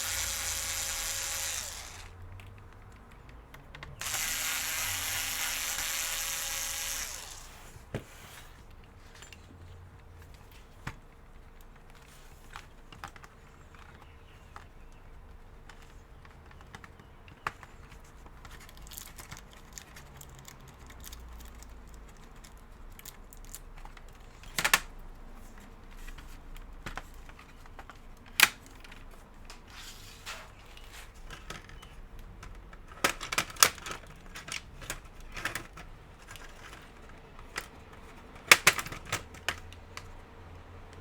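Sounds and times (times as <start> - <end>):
clicks of plastic laptop parts: 10.2 - 29.7, 30.3 - 40.2.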